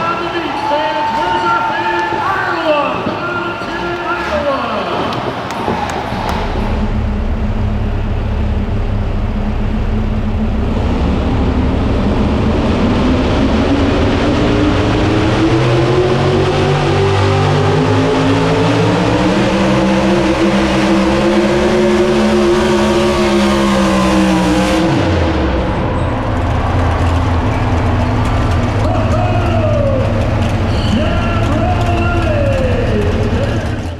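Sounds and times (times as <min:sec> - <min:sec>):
vehicle engine at full throttle: 0:05.5 - 0:33.9.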